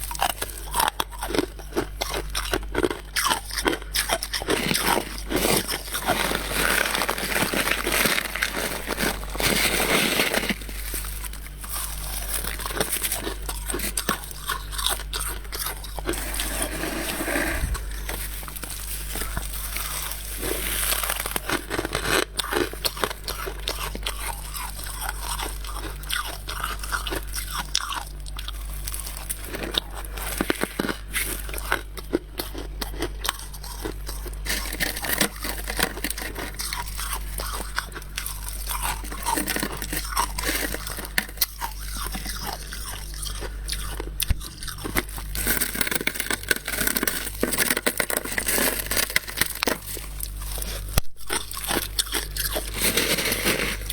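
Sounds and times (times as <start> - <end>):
frost being chewed crunching: 0.0 - 53.9
steady low hum: 3.8 - 27.6.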